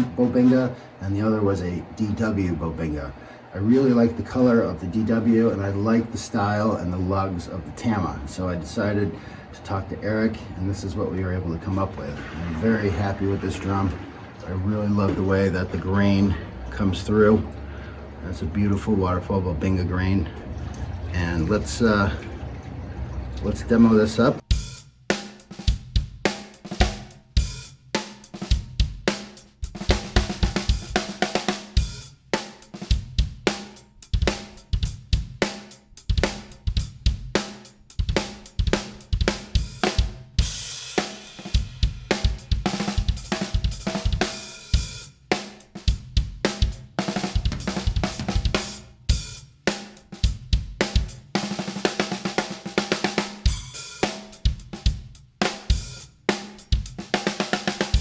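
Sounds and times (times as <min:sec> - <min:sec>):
drum kit playing: 0:00.0 - 0:00.9, 0:24.4 - 0:58.0
snare drum: 0:24.5 - 0:58.0
cymbal wash: 0:37.4 - 0:45.7.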